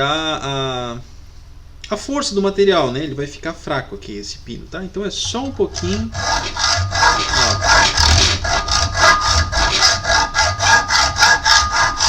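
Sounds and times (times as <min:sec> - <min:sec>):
hacksaw cutting metal: 0:05.3 - 0:12.0.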